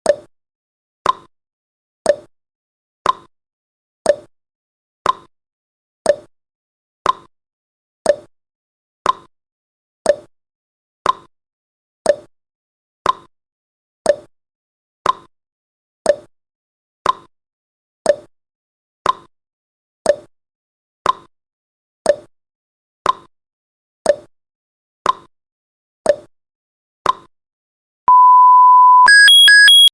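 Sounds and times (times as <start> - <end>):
steady electronic beep: 28.1 - 29.9.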